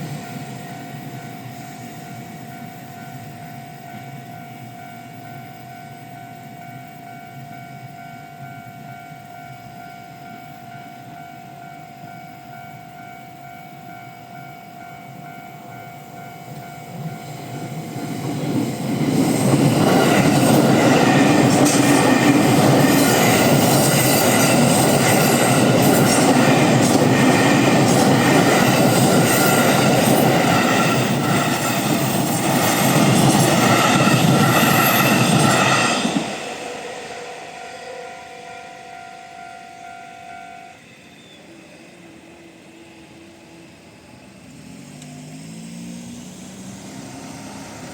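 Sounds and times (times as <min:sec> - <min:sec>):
crossing warning bell ringing: 0:00.0 - 0:44.8
train wheels clicking over rail joints: 0:16.4 - 0:39.5
low rising hum: 0:35.6 - 0:47.9.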